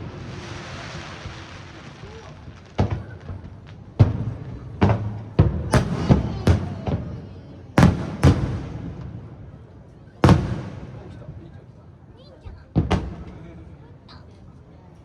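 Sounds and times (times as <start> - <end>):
rolling rumble: 0.0 - 9.3
firework shells booming: 2.7 - 11.3.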